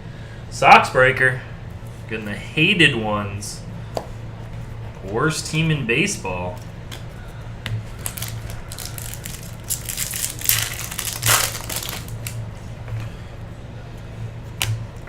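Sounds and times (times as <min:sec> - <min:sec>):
plastic wrappers crinkling: 0:07.9 - 0:12.4.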